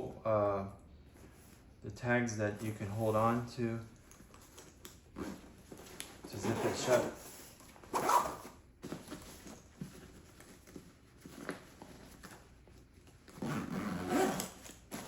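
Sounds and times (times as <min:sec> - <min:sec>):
zipper being pulled: 0:05.2 - 0:05.6, 0:06.3 - 0:07.2, 0:07.9 - 0:08.6, 0:13.3 - 0:15.0.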